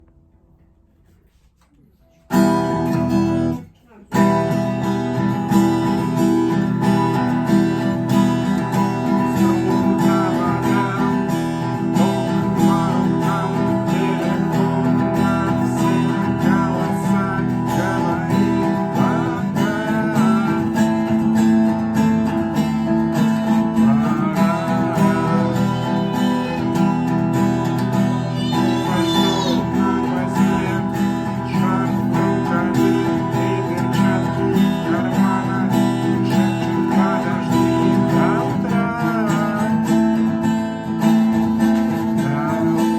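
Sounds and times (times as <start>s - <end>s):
acoustic guitar strumming: 2.1s - 42.9s.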